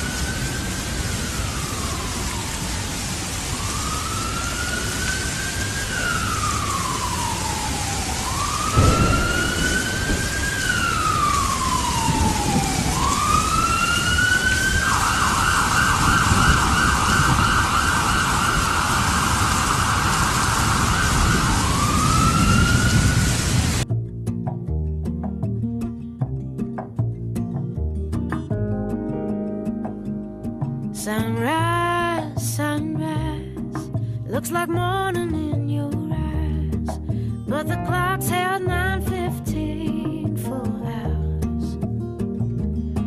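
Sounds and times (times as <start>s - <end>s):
ambulance siren wailing: 0.0s - 23.8s
street noise: 0.0s - 34.1s.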